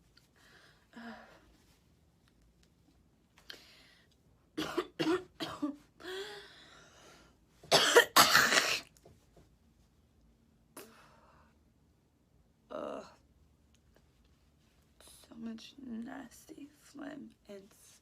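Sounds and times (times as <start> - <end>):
woman coughing: 4.6 - 5.8, 7.7 - 8.9.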